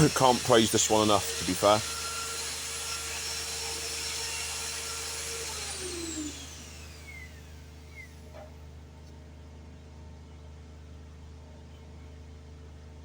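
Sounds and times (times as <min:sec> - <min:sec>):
drill motor whining and winding down: 0:00.0 - 0:08.4.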